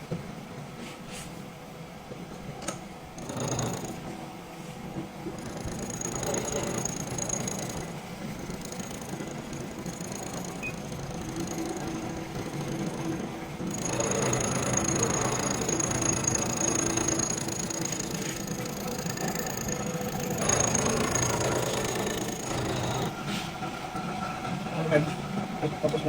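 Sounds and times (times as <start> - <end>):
cutter scraping and grinding metal: 5.4 - 23.2.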